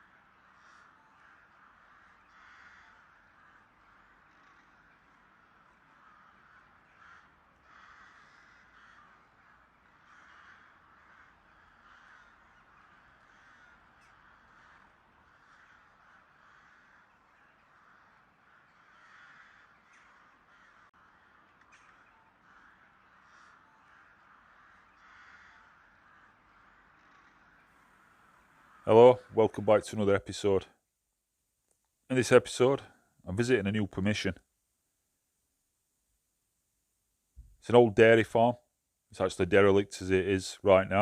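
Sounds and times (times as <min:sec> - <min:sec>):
crows cawing: 0:00.0 - 0:30.8.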